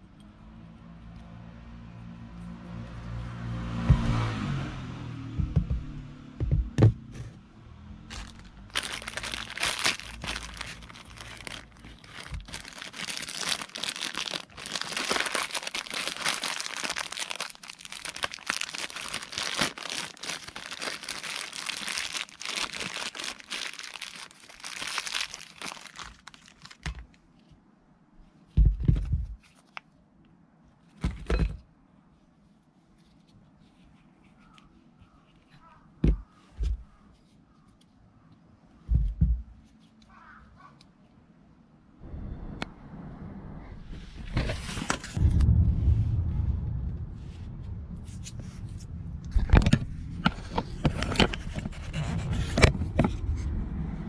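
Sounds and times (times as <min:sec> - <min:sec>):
dull thumps: 0:05.2 - 0:07.4
crinkling and scraping: 0:08.1 - 0:27.6, 0:28.3 - 0:29.9, 0:44.0 - 0:45.5, 0:47.2 - 0:53.6.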